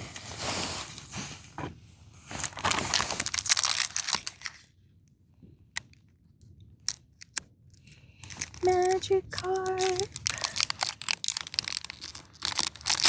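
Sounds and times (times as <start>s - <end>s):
foil wrapper crinkling and tearing: 2.3s - 4.7s, 8.2s - 13.0s.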